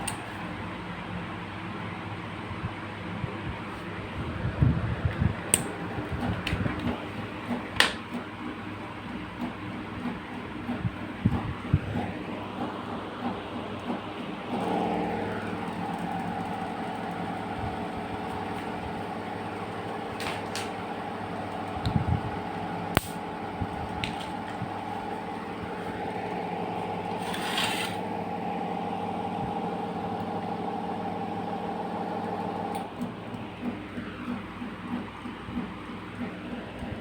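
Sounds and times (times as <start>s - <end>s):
ceiling fan motor humming: 0.0s - 37.0s
sharp click: 22.9s - 23.2s.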